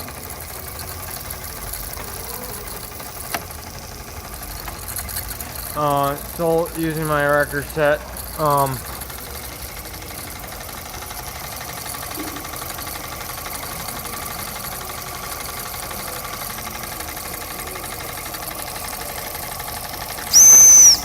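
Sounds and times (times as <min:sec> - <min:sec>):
model steam engine running: 0:00.0 - 0:21.0.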